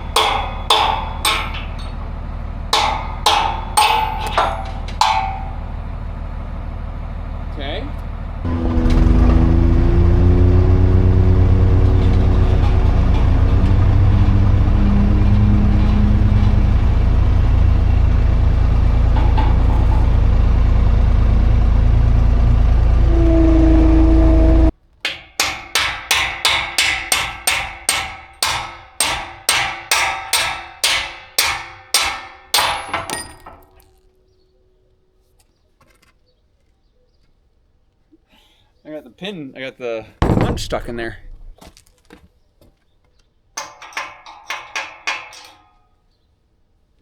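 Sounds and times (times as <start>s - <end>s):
skid steer engine running: 0.0s - 24.8s.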